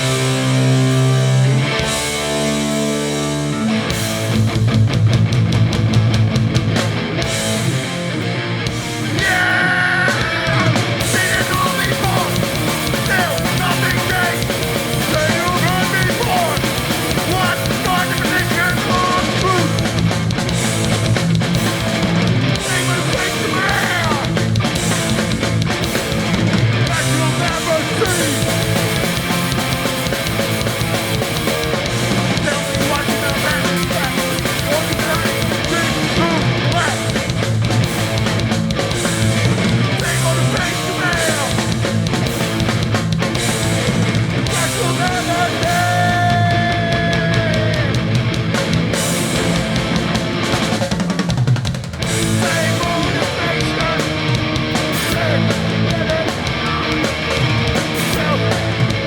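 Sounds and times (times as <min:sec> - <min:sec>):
distorted electric guitars: 0:00.0 - 0:59.0
fast drums: 0:00.0 - 0:59.0
punk band playing live: 0:00.0 - 0:59.0.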